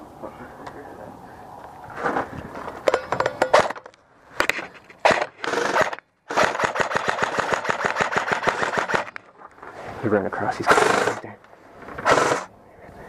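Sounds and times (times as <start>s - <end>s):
airsoft rifle firing: 5.0s - 9.1s, 12.0s - 12.5s.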